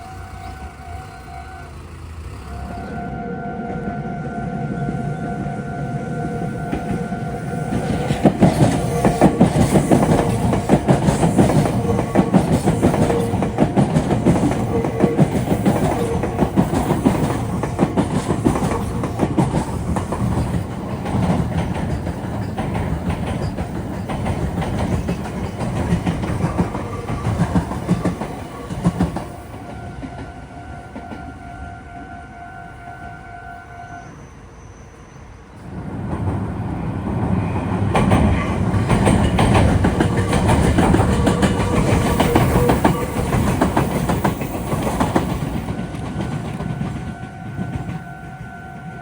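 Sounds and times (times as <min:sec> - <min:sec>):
train wheels clattering: 0:06.6 - 0:31.3, 0:35.8 - 0:49.0.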